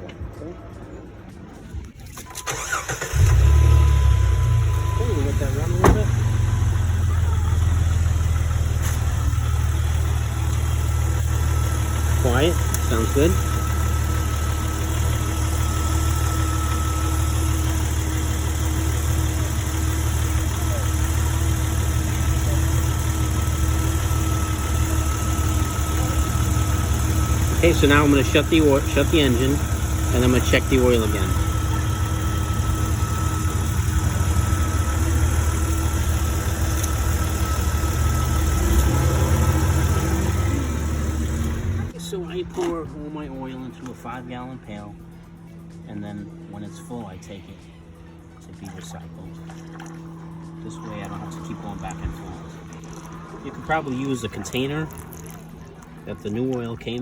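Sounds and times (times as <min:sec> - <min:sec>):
car engine idling: 0:01.8 - 0:57.0.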